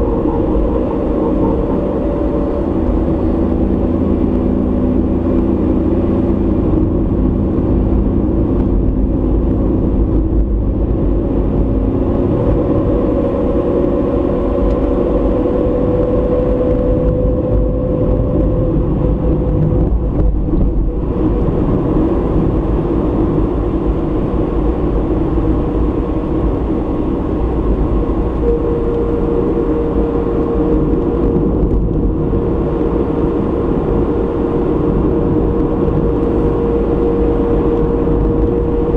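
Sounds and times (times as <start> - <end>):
car engine and tyre rumble: 0.0 - 38.9.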